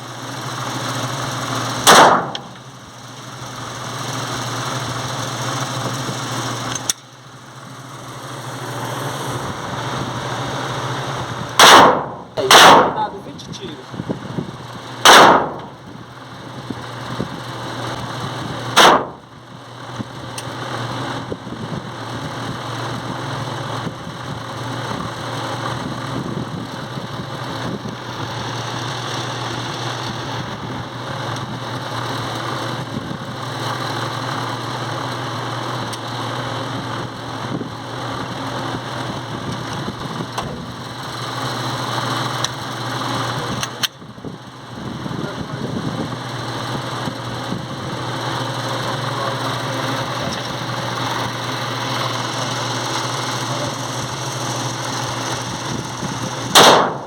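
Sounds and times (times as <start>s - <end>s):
steady mechanical hum: 0.0s - 57.0s
pistol shots: 1.8s - 2.6s, 11.6s - 13.1s, 15.0s - 15.7s, 18.8s - 19.2s, 56.5s - 57.0s.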